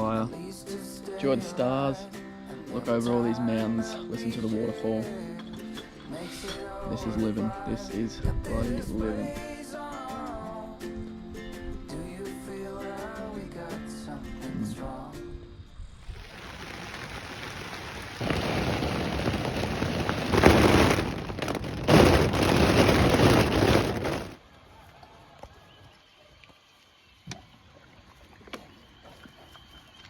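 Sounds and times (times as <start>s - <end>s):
heavy rain downpour: 16.1s - 24.4s.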